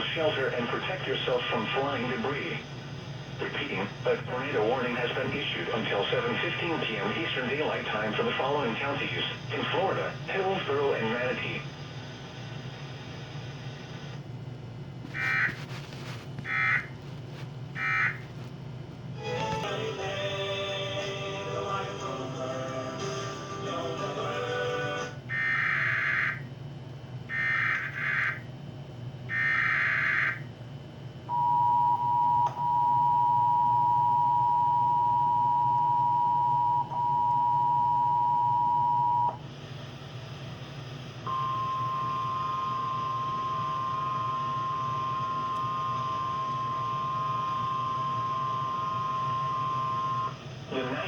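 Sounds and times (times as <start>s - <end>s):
music: 19.2s - 25.2s
two-tone attention signal: 41.3s - 50.3s.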